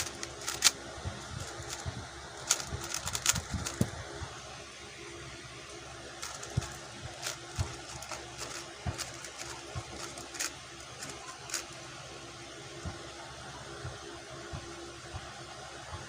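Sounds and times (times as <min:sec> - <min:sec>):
puzzle cube clicking: 0:00.0 - 0:00.8, 0:01.4 - 0:01.8, 0:02.4 - 0:03.9, 0:06.2 - 0:11.7
steady low hum: 0:00.0 - 0:16.0.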